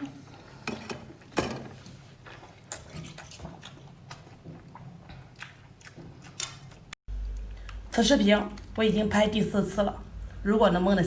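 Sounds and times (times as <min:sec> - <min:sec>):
person chewing: 0:02.2 - 0:07.8.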